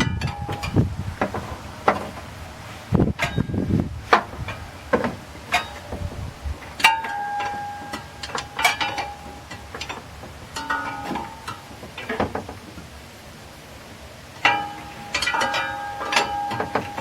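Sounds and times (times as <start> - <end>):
metal tools clanking: 6.8 - 12.5, 14.4 - 17.0.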